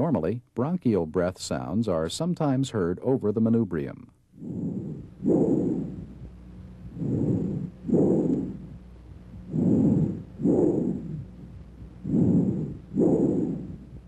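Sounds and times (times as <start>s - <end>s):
breathing through stethoscope: 4.4s - 6.3s, 6.9s - 8.8s, 9.5s - 14.0s.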